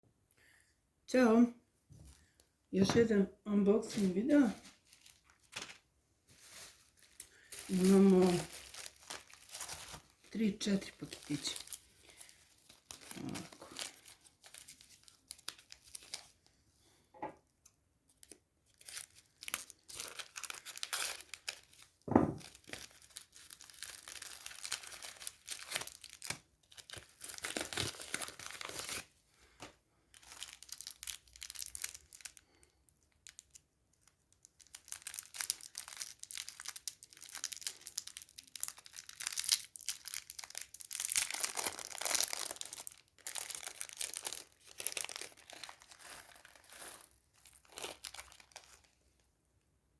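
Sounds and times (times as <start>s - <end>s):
packets torn open rustling: 3.9s - 16.4s, 18.1s - 49.0s.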